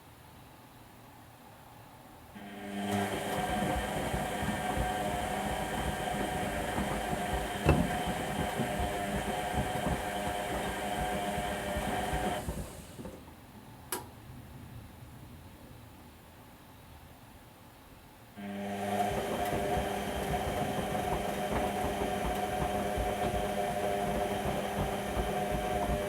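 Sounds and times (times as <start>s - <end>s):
washing machine drum turning: 2.6s - 13.3s, 18.6s - 26.0s.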